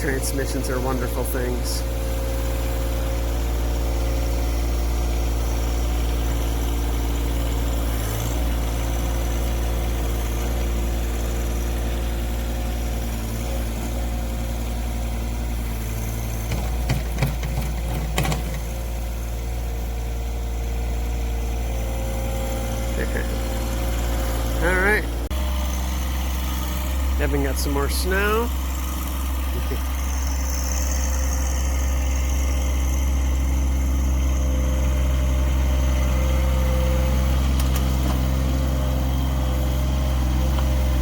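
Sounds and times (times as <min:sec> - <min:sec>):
tractor diesel engine running: 0:00.0 - 0:41.0
short knocks: 0:16.4 - 0:18.7.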